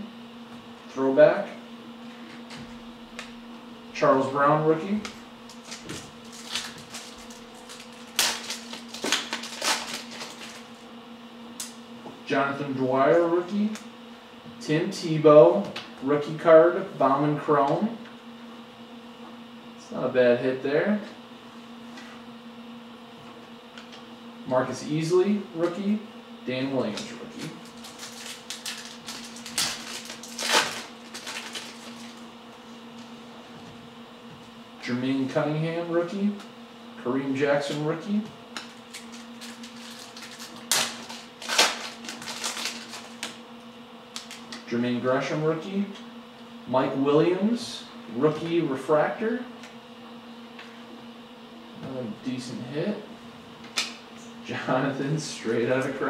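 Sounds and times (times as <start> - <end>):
faint steady hum: 0.0 - 56.0
trading cards rustling: 5.5 - 10.7, 26.9 - 32.2, 38.7 - 43.4.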